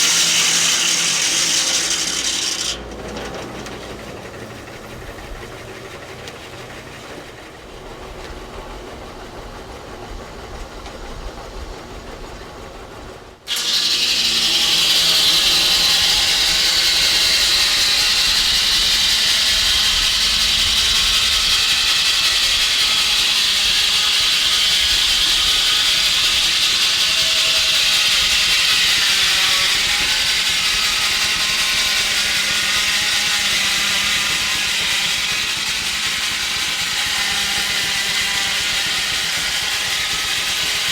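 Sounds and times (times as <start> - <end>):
steam engine hissing: 0.0 - 3.0, 3.9 - 40.9
machinery noise: 0.0 - 40.9.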